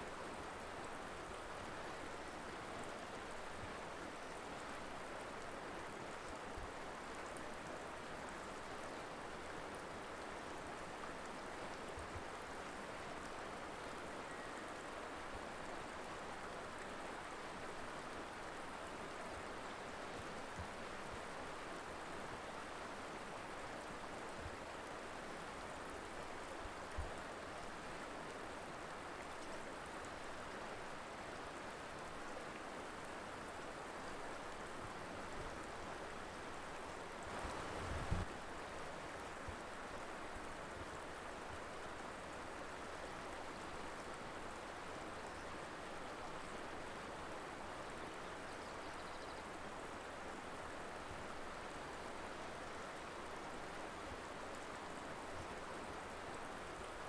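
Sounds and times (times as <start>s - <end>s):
river water rushing: 36.1s - 40.2s.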